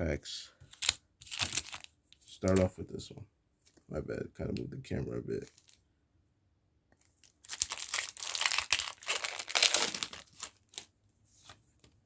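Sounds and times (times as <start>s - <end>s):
foil wrapper crinkling and tearing: 0.8s - 2.7s, 7.2s - 11.6s.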